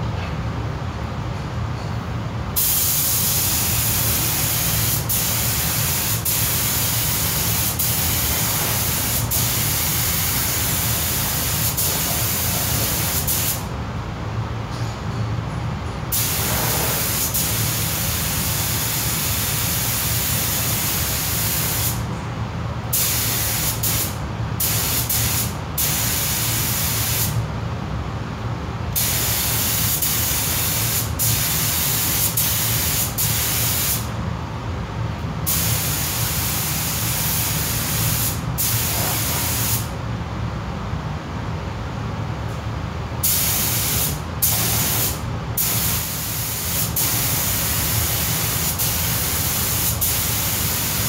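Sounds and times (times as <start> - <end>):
paint spray gun hissing: 16.1 - 22.0, 43.2 - 51.0.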